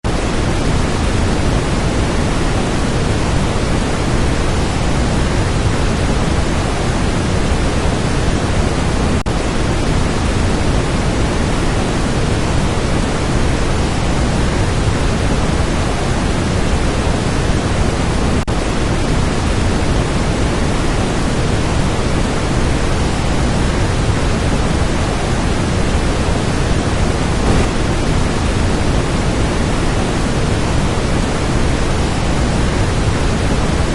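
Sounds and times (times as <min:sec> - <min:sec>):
waterfall rushing: 0:20.2 - 0:33.9.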